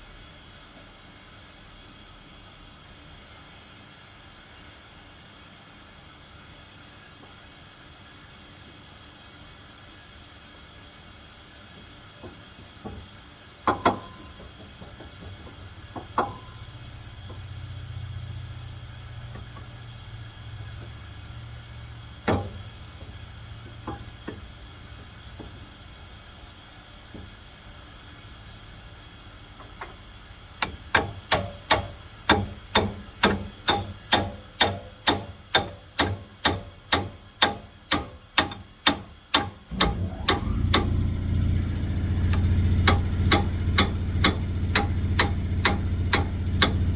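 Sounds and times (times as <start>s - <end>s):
metal clanks: 13.7s - 17.5s, 22.1s - 25.6s, 29.6s - 46.9s
sharp metallic taps: 13.7s - 17.5s, 22.1s - 25.6s, 30.6s - 41.0s, 42.2s - 46.9s
low steady hum: 28.2s - 46.9s.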